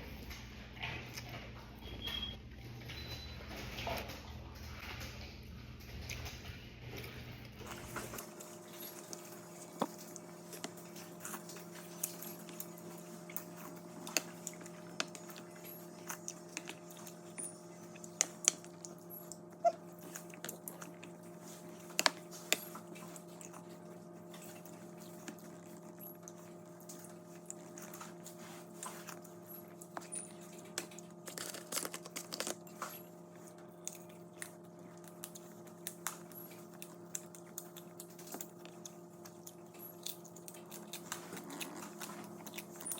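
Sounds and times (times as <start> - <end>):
low electrical hum: 0.0 - 42.9
person chewing crunchy vegetables: 6.0 - 42.9.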